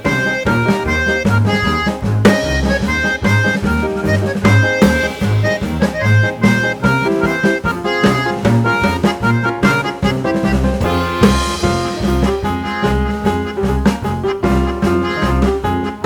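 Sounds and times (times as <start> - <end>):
instrumental music with drums and bass: 0.0 - 16.0.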